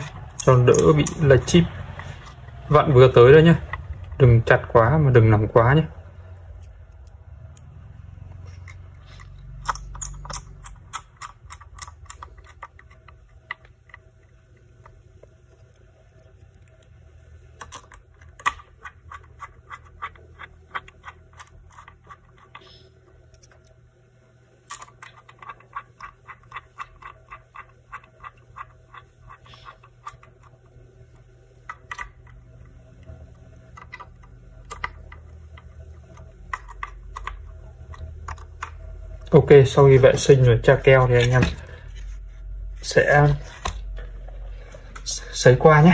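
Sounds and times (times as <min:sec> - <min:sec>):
low hum: 0:28.0 - 0:45.9.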